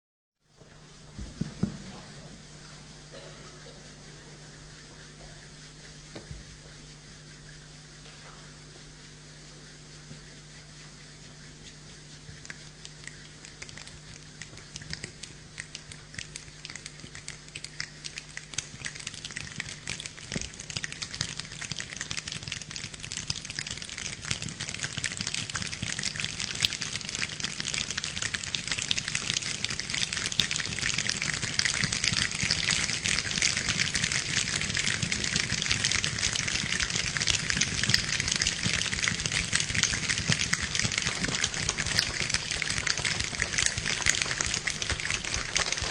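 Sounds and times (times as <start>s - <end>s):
hands tapping like rain: 12.3s - 45.9s.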